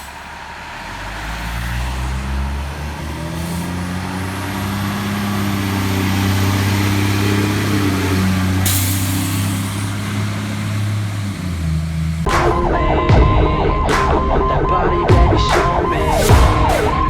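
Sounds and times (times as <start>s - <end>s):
air brakes hissing: 0.0s - 12.2s
diesel engine running: 0.0s - 17.0s.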